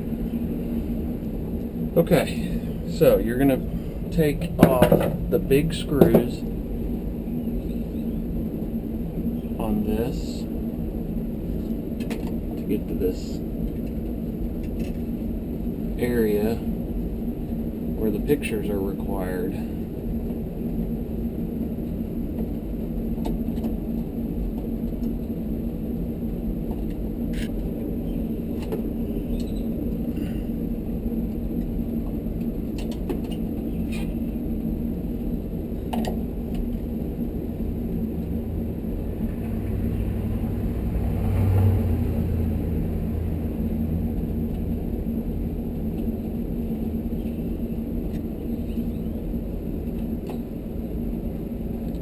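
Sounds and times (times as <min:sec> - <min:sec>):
deeper hum: 0:00.0 - 0:52.0
low background hum: 0:00.0 - 0:52.0.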